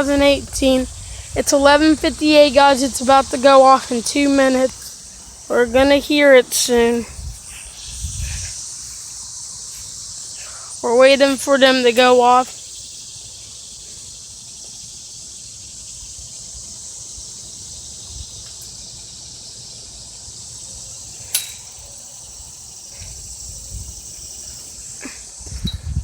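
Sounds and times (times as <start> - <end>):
high-pitched insect chorus: 0.0 - 26.0
sharp click: 21.3 - 21.7.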